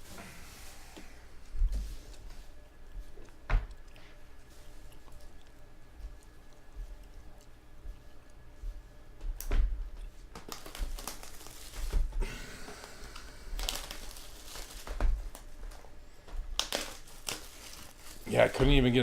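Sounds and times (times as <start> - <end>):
wrappers crinkling and rustling: 10.2 - 12.2, 12.8 - 19.0.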